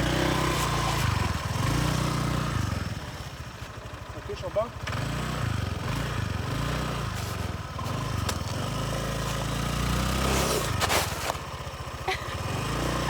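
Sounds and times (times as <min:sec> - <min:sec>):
motorbike engine revving: 0:00.0 - 0:04.0, 0:04.7 - 0:13.0.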